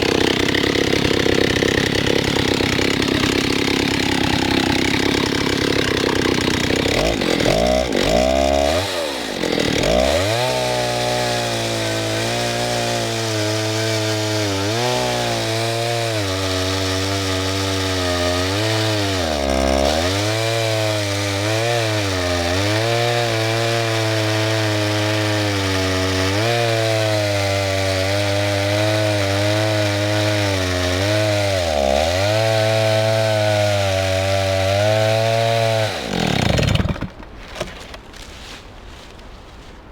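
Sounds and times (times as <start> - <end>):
chainsaw cutting wood: 0.0 - 38.0.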